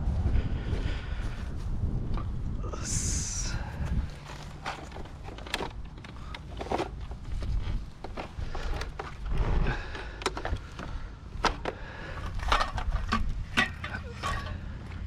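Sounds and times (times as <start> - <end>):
low rumble: 0.0 - 5.3
hard objects knocking and scraping: 4.1 - 14.7.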